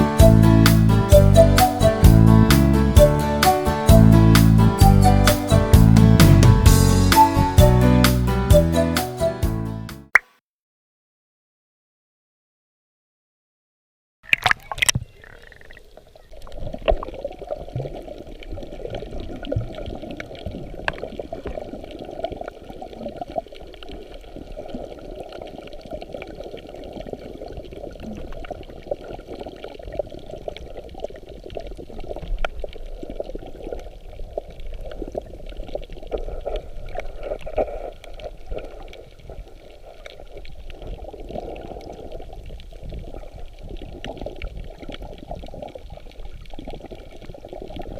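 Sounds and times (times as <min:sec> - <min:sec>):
water sloshing and bubbling: 0:14.2 - 0:47.9.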